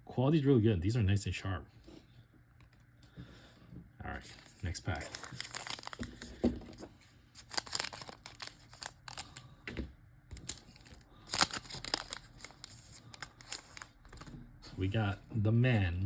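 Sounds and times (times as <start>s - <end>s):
card pack wrapper tearing: 4.2s - 6.4s, 7.4s - 9.4s, 10.3s - 14.3s.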